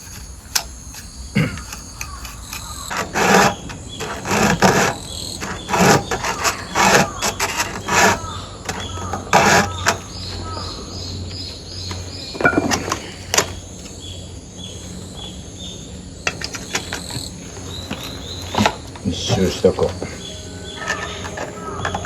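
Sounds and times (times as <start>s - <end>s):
file rasping on chainsaw chain: 1.6s - 10.7s.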